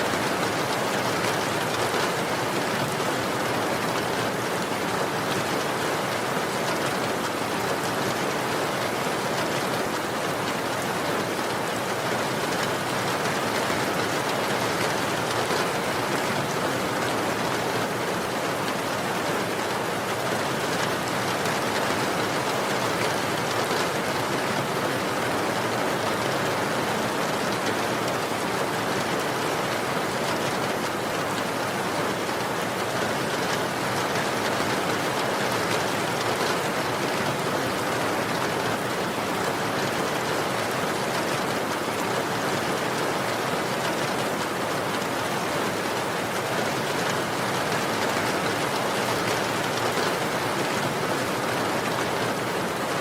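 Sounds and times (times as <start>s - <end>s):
steady rain hiss: 0.0s - 53.0s.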